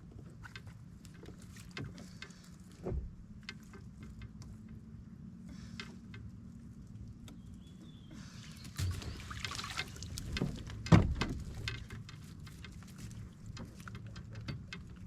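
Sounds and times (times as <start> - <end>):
water splashing and sloshing: 0.0 - 4.8, 5.4 - 15.0.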